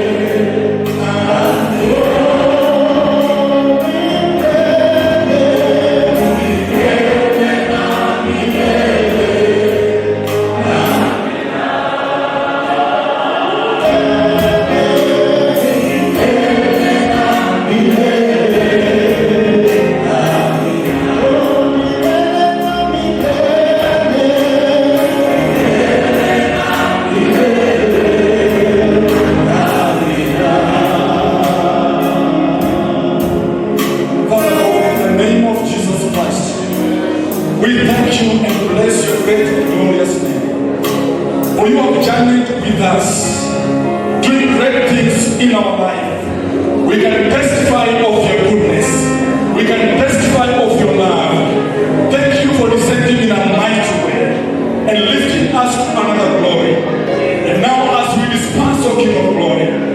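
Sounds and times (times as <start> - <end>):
instrumental accompaniment with beat: 0.0 - 45.6
choir singing gospel song: 0.0 - 59.9.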